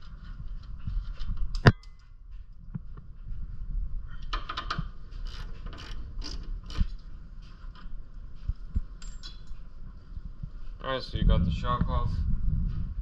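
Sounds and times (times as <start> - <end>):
ratchet wrench clicking: 4.3 - 6.9.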